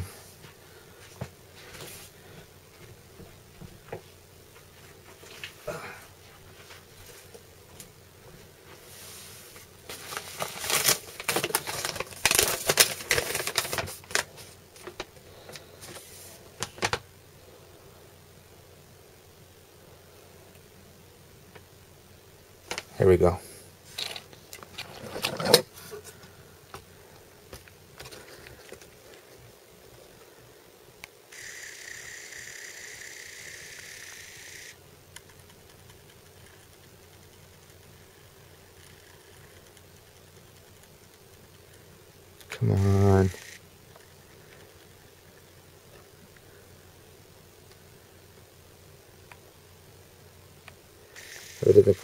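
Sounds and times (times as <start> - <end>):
papers rustling: 9.1 - 17.0, 23.9 - 26.9
camera lens motor whirring: 31.3 - 35.4, 42.8 - 44.1, 51.2 - 51.8.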